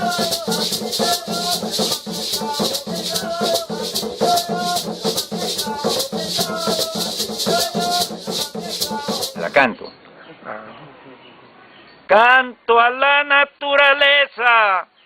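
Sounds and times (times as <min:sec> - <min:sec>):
maracas shaken: 0:00.0 - 0:09.7.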